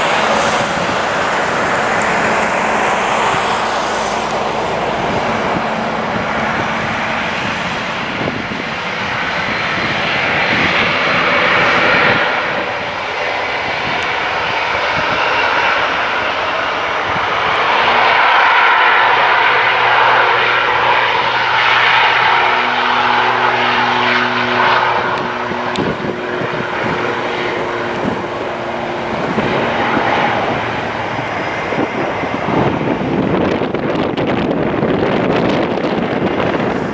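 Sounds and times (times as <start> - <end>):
airliner engines passing: 0.0 - 36.9.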